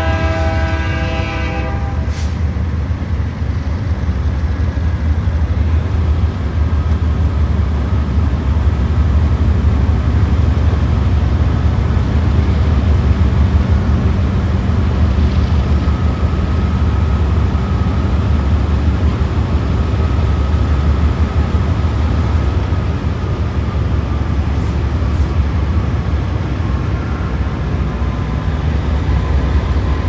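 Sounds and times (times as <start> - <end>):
train horn: 0.0 - 2.4
train rumbling: 0.0 - 30.0.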